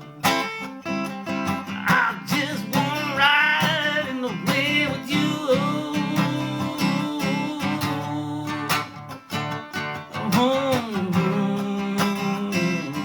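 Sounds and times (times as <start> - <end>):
acoustic guitar strumming: 0.0 - 13.0
person singing: 1.6 - 9.1, 10.1 - 13.0.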